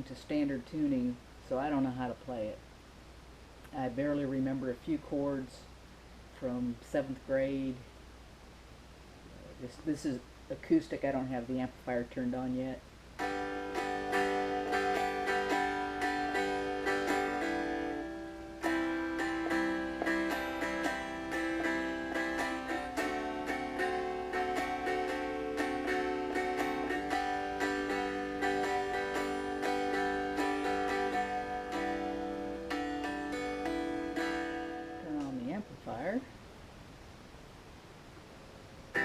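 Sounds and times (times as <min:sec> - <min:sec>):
acoustic guitar chords strummed: 0:13.2 - 0:36.2.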